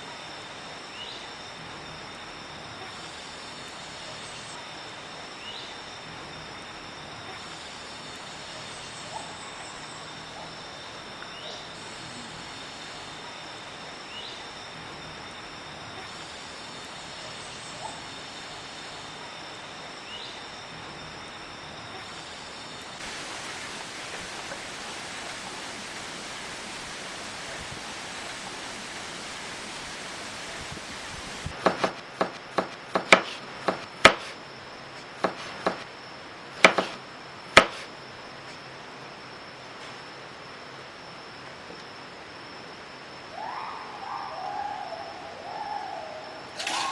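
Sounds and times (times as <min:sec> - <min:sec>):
faint high steady tone: 0:00.0 - 0:31.6, 0:38.7 - 0:46.9
outdoor background hiss: 0:00.0 - 0:46.9
sharp loud knocks: 0:31.6 - 0:34.3, 0:36.6 - 0:37.0.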